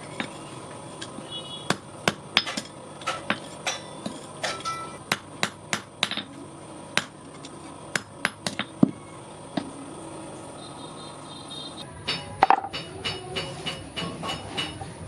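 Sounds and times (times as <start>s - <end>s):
hammer striking steel on anvil: 1.7s - 6.3s, 12.0s - 14.9s.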